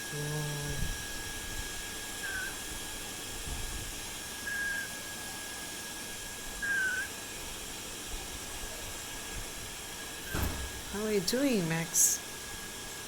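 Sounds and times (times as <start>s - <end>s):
parrot whistling: 2.2s - 2.6s, 4.4s - 5.1s, 6.6s - 7.1s
high thin tone with hiss: 4.4s - 5.4s.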